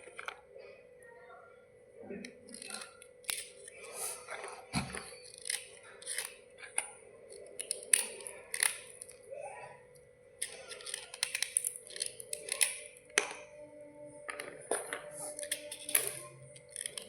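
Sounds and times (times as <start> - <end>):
slate pencils scraping and crunching: 2.2 - 9.3, 10.4 - 13.5, 14.3 - 17.0.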